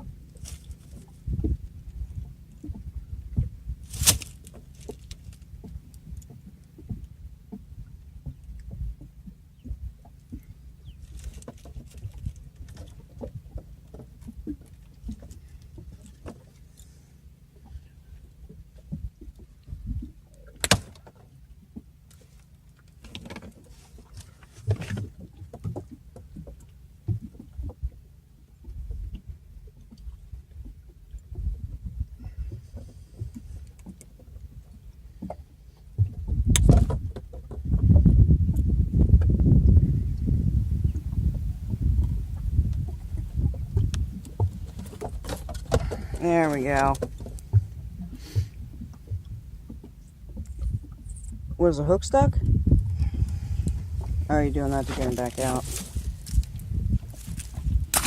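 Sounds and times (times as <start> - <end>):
low rumble: 0.0 - 16.0, 28.6 - 58.0.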